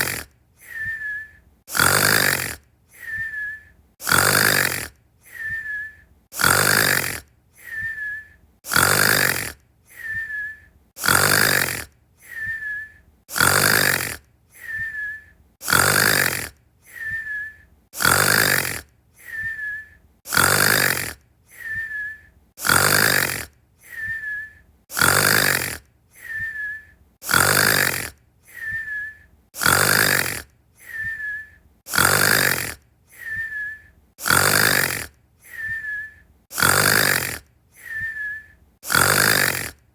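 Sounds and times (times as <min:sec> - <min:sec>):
person snoring: 0:00.0 - 0:00.9, 0:01.7 - 0:03.2, 0:04.0 - 0:05.7, 0:06.4 - 0:08.0, 0:08.7 - 0:10.3, 0:11.0 - 0:17.4, 0:18.0 - 0:19.7, 0:20.3 - 0:22.0, 0:22.6 - 0:26.6, 0:27.2 - 0:29.0, 0:29.6 - 0:31.3, 0:31.9 - 0:35.9, 0:36.5 - 0:38.1, 0:38.8 - 0:39.8
whistling breath: 0:00.0 - 0:39.7.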